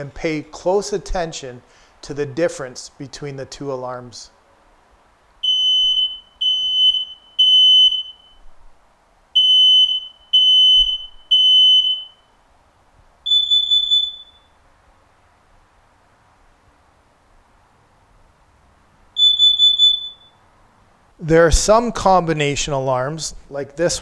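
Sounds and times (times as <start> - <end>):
smoke alarm beeping: 5.4 - 8.5, 9.4 - 12.3, 13.2 - 14.6, 19.2 - 20.5
carbon monoxide alarm beeps: 5.4 - 8.6, 9.4 - 12.4, 13.2 - 14.6, 19.2 - 20.5.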